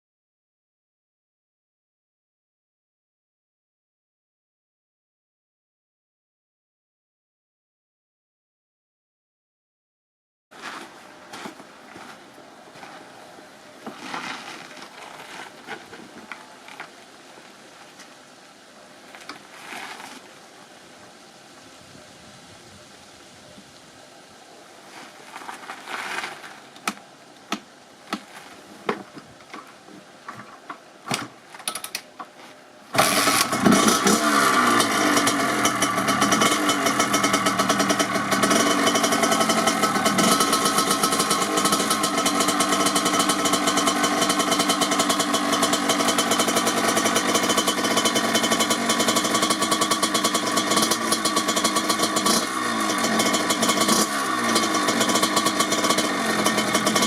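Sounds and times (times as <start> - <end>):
two-stroke motorcycle engine starting: 32.9 - 57.0.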